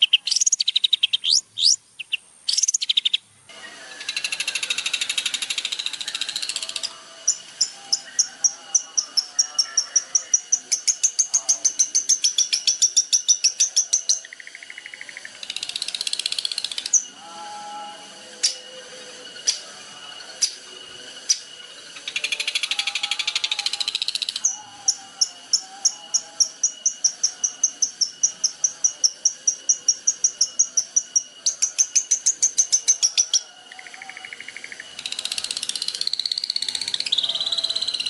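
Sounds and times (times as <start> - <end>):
songbird scratchy chatter: 0.0 - 3.2.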